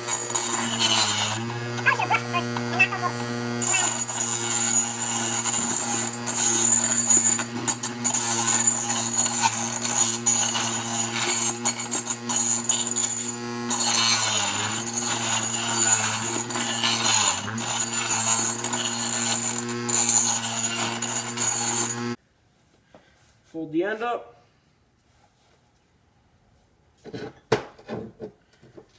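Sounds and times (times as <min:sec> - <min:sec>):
bench grinder grinding metal: 0:00.0 - 0:22.2.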